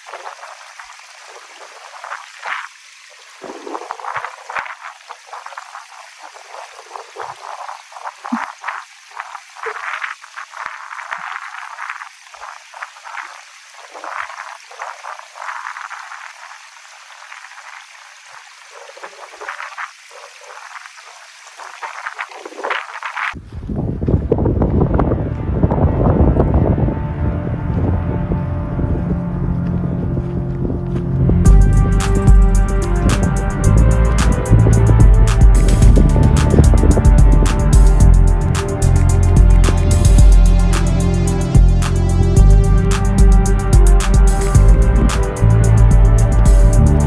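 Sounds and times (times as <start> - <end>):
stream water gurgling and splashing: 0.0 - 46.8.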